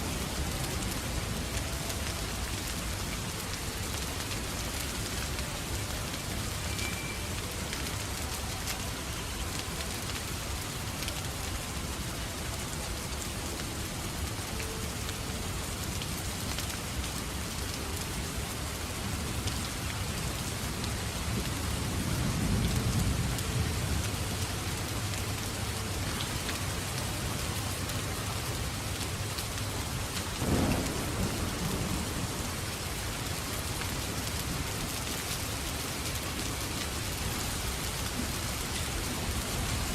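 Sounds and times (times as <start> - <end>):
steady rain falling: 0.0 - 39.9
low rumble of thunder: 30.4 - 33.6.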